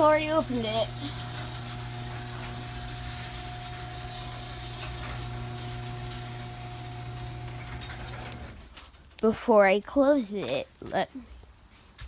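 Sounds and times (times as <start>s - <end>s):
garage door opener motor hum: 0.0s - 8.8s.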